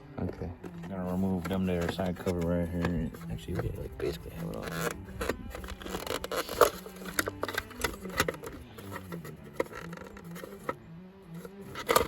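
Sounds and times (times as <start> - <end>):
clicks and knocks of tools: 4.6 - 10.8, 11.4 - 12.0.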